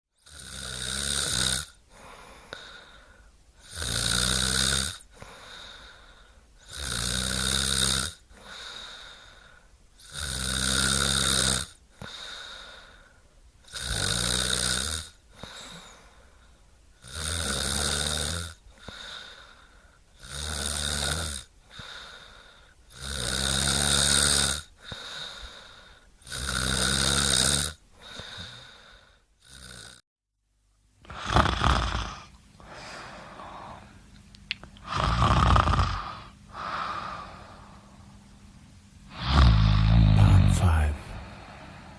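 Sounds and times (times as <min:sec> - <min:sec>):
person snoring: 0:00.2 - 0:03.0, 0:03.6 - 0:05.9, 0:06.6 - 0:09.2, 0:10.0 - 0:12.9, 0:13.7 - 0:16.0, 0:17.0 - 0:19.4, 0:22.9 - 0:30.0, 0:31.0 - 0:33.9, 0:34.8 - 0:37.8, 0:39.1 - 0:41.9
quiet breaths: 0:01.7 - 0:04.0, 0:05.0 - 0:07.3, 0:08.2 - 0:10.4, 0:11.7 - 0:14.3, 0:15.0 - 0:20.3, 0:21.5 - 0:23.0, 0:24.6 - 0:26.6, 0:27.8 - 0:29.4, 0:32.0 - 0:41.9.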